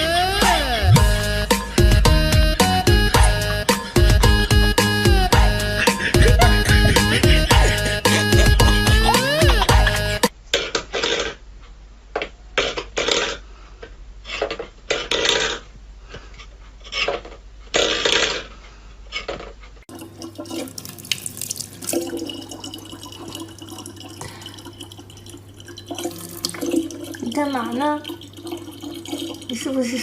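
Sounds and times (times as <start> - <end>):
steady low hum: 0.5 - 10.3
water running: 2.8 - 10.3, 19.9 - 30.0
water splashing: 19.9 - 30.0.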